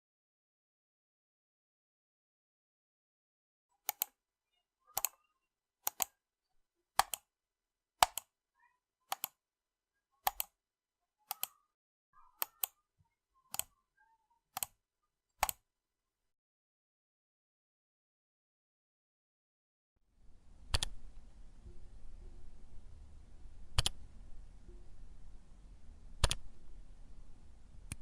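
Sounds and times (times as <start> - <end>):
computer mouse button clicking: 3.8 - 4.2, 4.9 - 5.2, 5.8 - 6.2, 7.0 - 7.3, 8.0 - 8.3, 9.1 - 9.4, 10.2 - 10.5, 11.3 - 11.6, 12.4 - 12.8, 13.5 - 13.8, 14.6 - 14.8, 15.4 - 15.6, 20.7 - 21.0, 23.8 - 24.0, 26.2 - 26.4.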